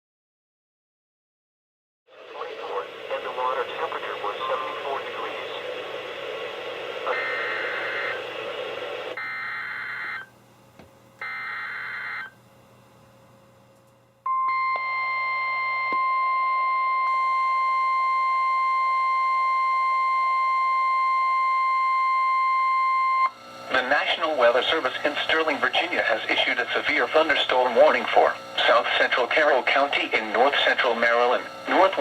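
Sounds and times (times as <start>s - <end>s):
radio hiss: 2.1s - 9.2s, 23.7s - 32.0s
steady alarm tone: 6.2s - 10.3s, 11.2s - 12.4s, 14.3s - 32.0s
warbling data bursts: 7.0s - 8.4s.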